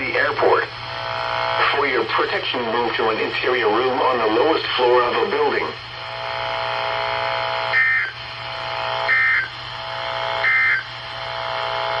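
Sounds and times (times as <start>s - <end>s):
faint hum: 0.0s - 12.0s
receiver hiss: 0.0s - 12.0s.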